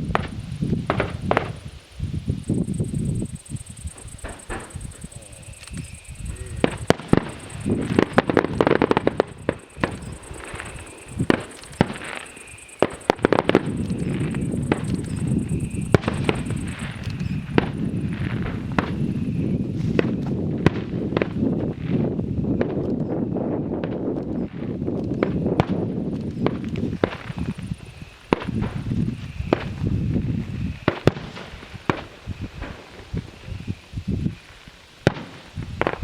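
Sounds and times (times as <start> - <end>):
steady rushing noise: 0.0 - 20.6
fireworks bangs and cracks: 0.0 - 36.0.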